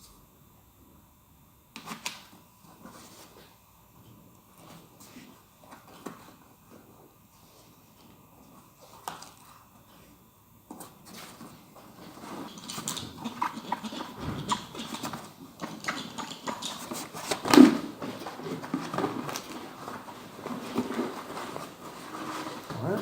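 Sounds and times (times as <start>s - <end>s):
rubbing and rustling of rubber seal: 11.0s - 23.0s.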